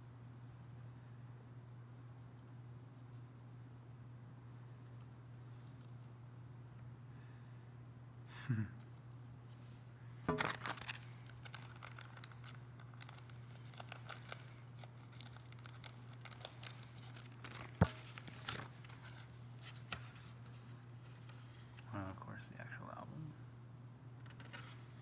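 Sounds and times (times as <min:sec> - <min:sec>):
packaging crinkling and tearing: 0:10.4 - 0:19.9.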